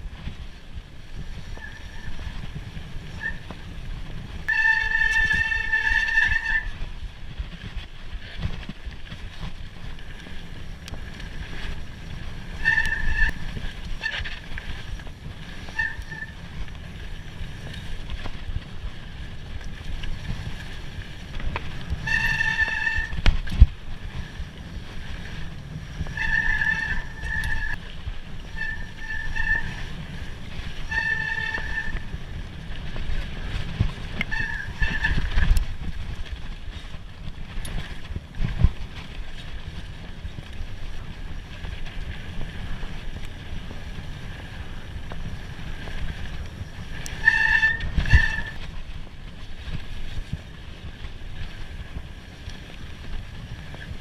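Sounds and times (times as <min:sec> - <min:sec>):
tyres and wind rumble: 0:00.0 - 0:54.0
high-pitched bike whines: 0:01.2 - 0:03.8, 0:04.5 - 0:06.9, 0:10.0 - 0:35.6.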